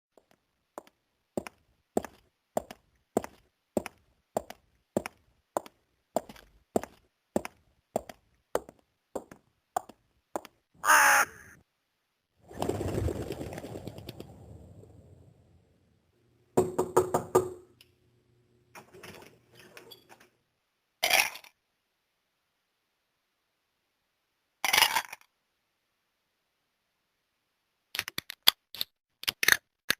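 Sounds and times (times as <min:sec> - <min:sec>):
harsh caw-like call: 0:10.8 - 0:11.6.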